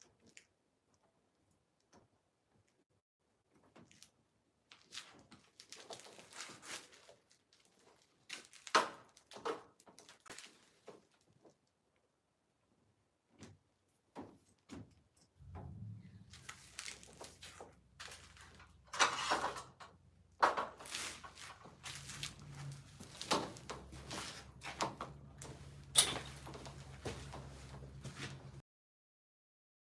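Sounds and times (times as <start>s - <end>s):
knocks and clatters: 14.2s - 28.6s
steady low hum: 15.4s - 16.8s.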